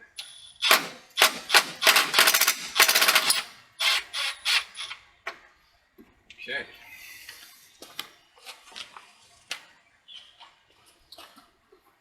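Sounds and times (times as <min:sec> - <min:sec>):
power driver hammering bolts: 0:00.6 - 0:04.0.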